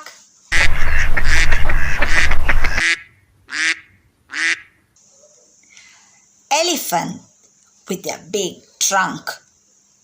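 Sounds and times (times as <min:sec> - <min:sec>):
ducks quacking: 0:00.5 - 0:04.7.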